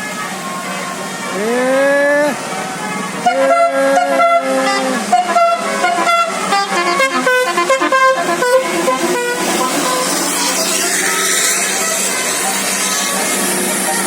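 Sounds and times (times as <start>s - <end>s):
bus horn playing a melody: 2.9s - 14.0s.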